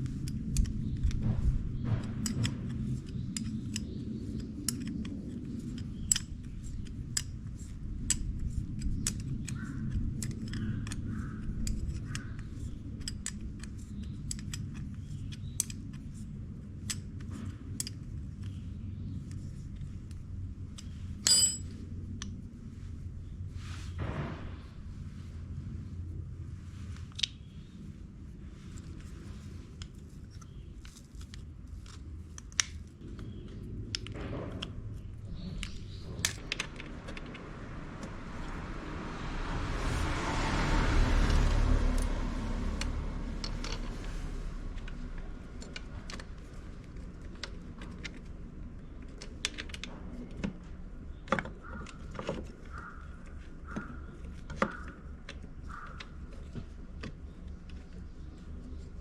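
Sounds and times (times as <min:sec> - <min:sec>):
metal parts and tools clinking: 0:20.7 - 0:21.8.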